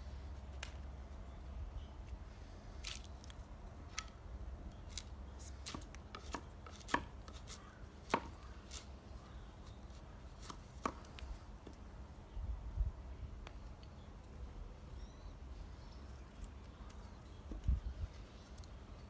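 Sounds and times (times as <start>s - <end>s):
axe splitting firewood: 4.8s - 8.9s.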